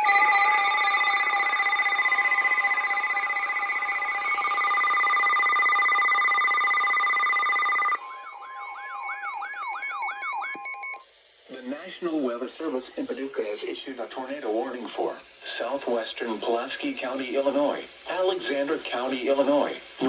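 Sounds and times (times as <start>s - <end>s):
warbling siren: 0.0s - 11.0s
electronic alert tone chord: 0.7s - 11.0s.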